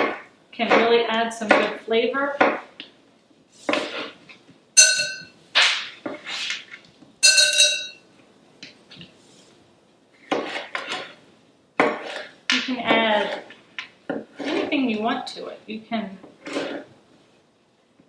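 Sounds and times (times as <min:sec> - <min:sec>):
scraping and rustling of food prep: 0:02.3 - 0:04.7, 0:05.4 - 0:07.2, 0:08.8 - 0:17.5
kitchenware clinking: 0:04.8 - 0:05.4, 0:07.2 - 0:08.1.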